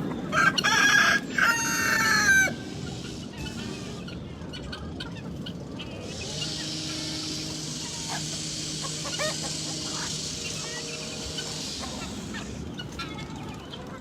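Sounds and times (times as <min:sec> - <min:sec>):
chickens clucking: 0:00.0 - 0:14.0
low mechanical hum: 0:00.0 - 0:14.0
steady hiss: 0:06.5 - 0:12.6.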